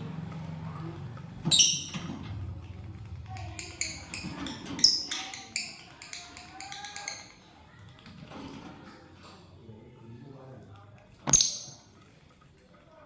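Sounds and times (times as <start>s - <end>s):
lovebirds chirping: 1.5s - 2.1s, 3.2s - 7.5s.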